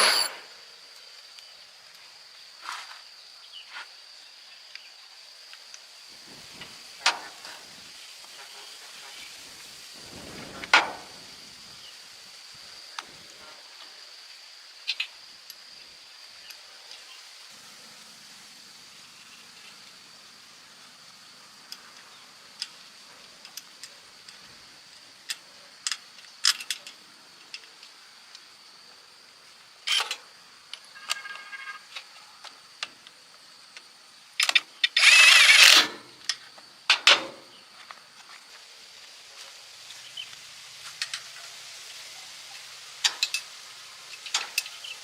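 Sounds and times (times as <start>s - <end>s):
scraping rattle: 0.0s - 0.5s
high insect drone: 0.0s - 45.0s
clinks of hand tools on metal: 43.0s - 43.5s, 44.1s - 44.8s.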